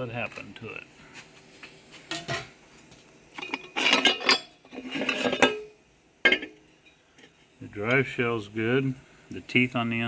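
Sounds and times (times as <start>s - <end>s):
metal parts clinking and scraping: 3.4s - 5.6s.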